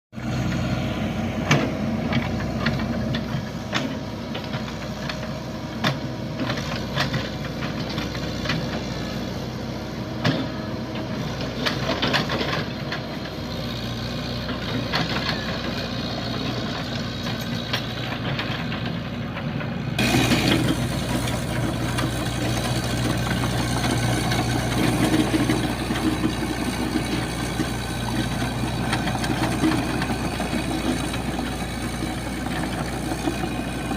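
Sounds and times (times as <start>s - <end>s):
excavator diesel engine running: 0.2s - 33.9s.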